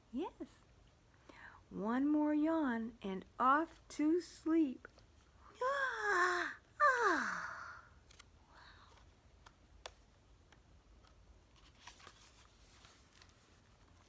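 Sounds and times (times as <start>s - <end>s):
soft rustle of pages: 4.8s - 5.5s, 7.9s - 14.0s.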